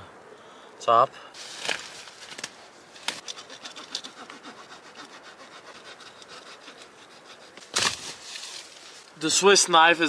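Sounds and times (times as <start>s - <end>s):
small saw cutting dry wood: 3.2s - 8.2s.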